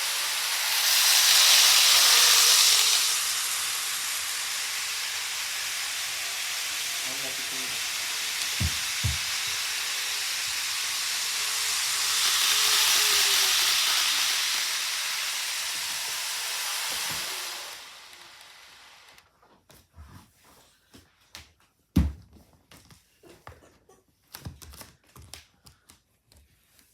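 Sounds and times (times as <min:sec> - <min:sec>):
steady hiss: 0:00.0 - 0:19.2.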